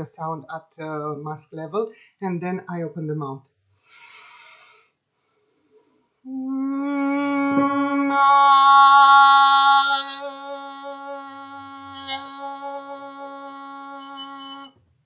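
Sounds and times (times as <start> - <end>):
woman breathing in: 3.8 - 5.0
woman singing a long note: 6.3 - 14.7.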